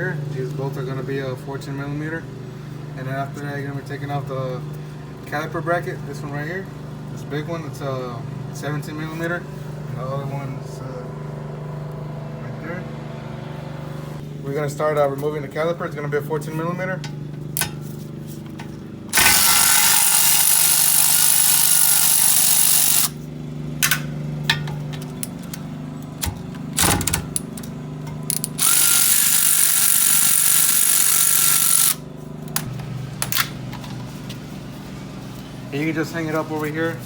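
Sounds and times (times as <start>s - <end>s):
impact wrench spinning bolts: 18.5s - 23.2s, 24.7s - 33.4s.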